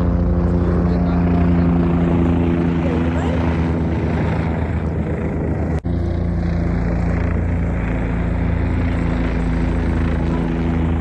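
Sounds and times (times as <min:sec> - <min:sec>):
helicopter engine and rotor drone: 0:00.0 - 0:11.0.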